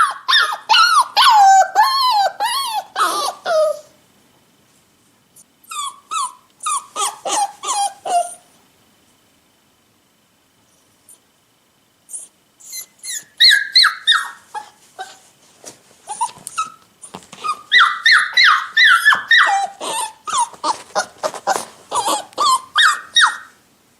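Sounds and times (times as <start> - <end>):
puppy whimpering: 0.0 - 4.0, 5.6 - 8.5, 12.1 - 15.3, 16.1 - 23.6.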